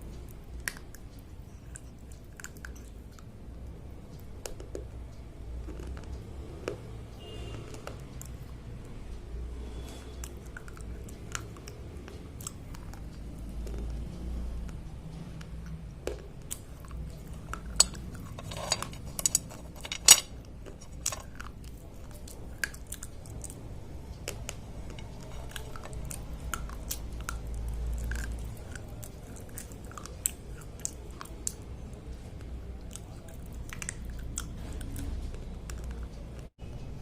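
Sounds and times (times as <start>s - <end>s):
slate pencils crunching in teeth: 16.5s - 23.6s, 24.2s - 31.4s.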